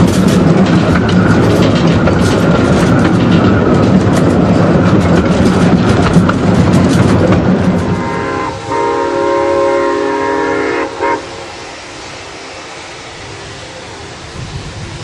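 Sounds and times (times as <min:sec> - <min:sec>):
steam locomotive rail clatter: 0:00.0 - 0:15.0
steam whistle blast: 0:08.0 - 0:12.0.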